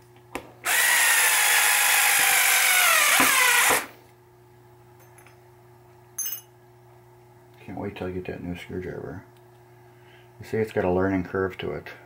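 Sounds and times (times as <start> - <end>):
cordless screwdriver whining: 0.7 - 3.9.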